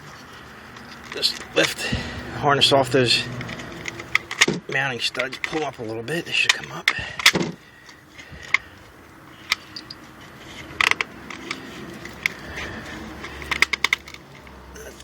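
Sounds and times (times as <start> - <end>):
plastic clips clicking and rattling: 3.3 - 8.7, 9.4 - 15.0.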